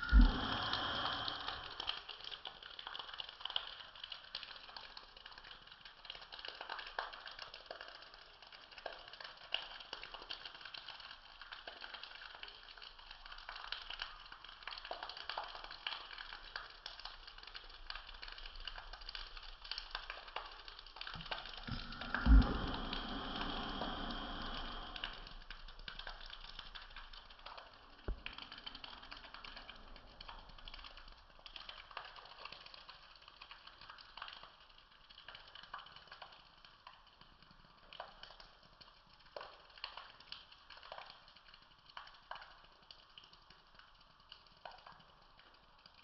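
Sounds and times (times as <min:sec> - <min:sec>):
heavy rain pattering: 0:16.8 - 0:32.0.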